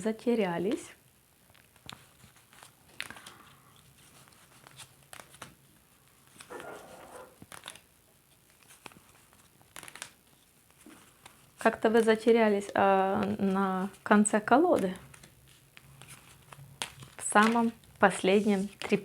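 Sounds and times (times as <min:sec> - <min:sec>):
paper rustling: 0:01.5 - 0:14.1, 0:14.7 - 0:19.0
playing cards clicking: 0:06.2 - 0:07.8, 0:08.5 - 0:10.2.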